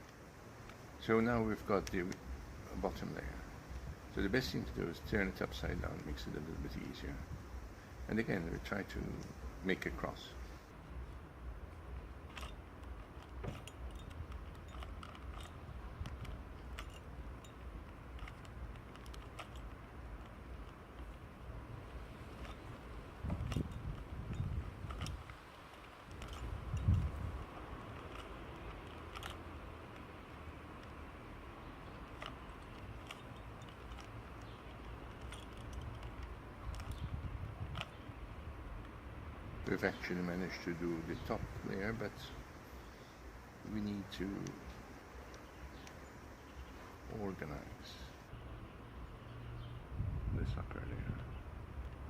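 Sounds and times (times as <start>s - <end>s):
low steady rumble: 0.0s - 52.0s
puzzle cube clicking as twisted: 12.2s - 31.1s.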